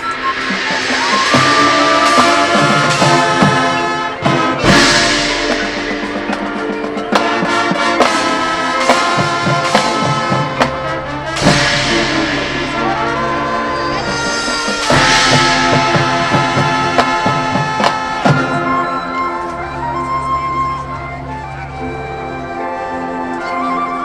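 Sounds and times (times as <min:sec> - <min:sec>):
cymbal crashes: 0:00.0 - 0:19.1
marching band playing: 0:00.0 - 0:23.6.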